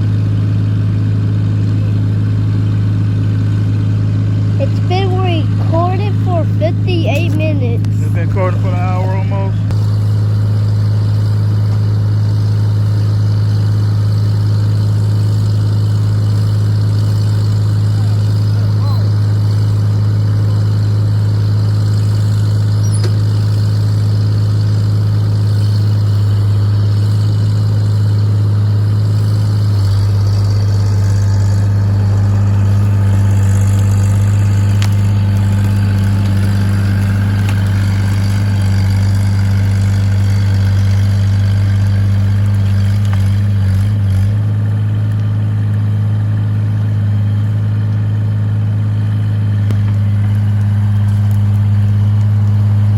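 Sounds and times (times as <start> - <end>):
excavator engine running: 0.0 - 52.9.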